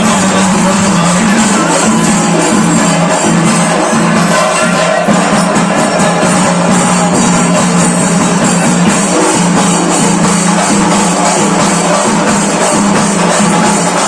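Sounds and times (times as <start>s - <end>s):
loud music with drums: 0.0s - 14.0s.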